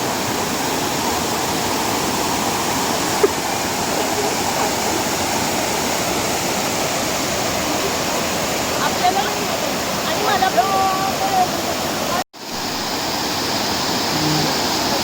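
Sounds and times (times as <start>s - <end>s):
small waterfall pouring: 0.0s - 15.0s.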